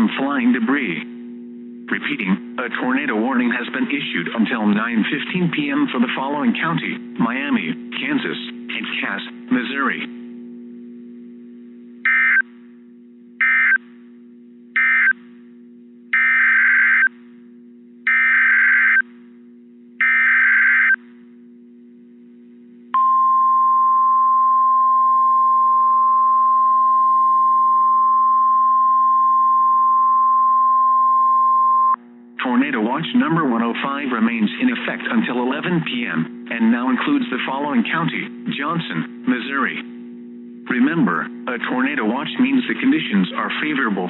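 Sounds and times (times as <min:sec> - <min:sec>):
faint low hum: 0:00.0 - 0:44.0
steady alarm tone: 0:12.0 - 0:12.5, 0:13.4 - 0:14.0, 0:14.7 - 0:15.3, 0:16.1 - 0:17.2, 0:18.0 - 0:19.1, 0:20.0 - 0:21.0.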